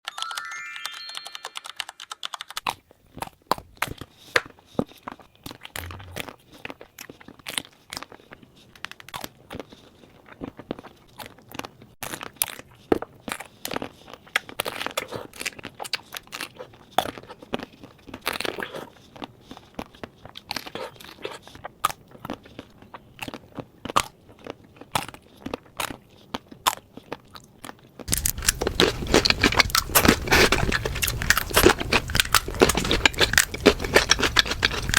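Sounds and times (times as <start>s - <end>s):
wet chewing: 2.7s - 34.9s
brief pitched tone: 5.8s - 6.3s
chocolate shell crunching: 22.7s - 34.9s.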